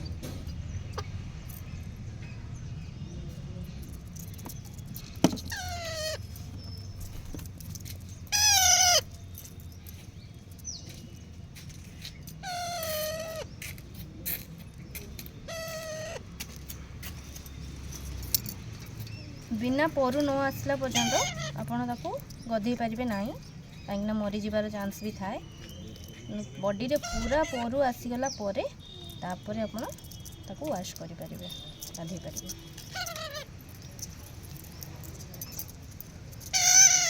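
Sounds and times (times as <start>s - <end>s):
parrot squawks: 5.5s - 6.3s, 8.3s - 9.1s, 12.4s - 13.5s, 15.5s - 16.3s, 20.9s - 21.6s, 32.8s - 33.5s, 36.5s - 37.0s.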